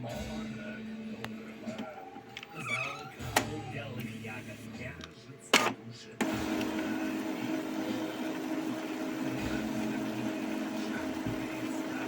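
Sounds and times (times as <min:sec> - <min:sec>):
printer motor humming: 0:05.6 - 0:12.0.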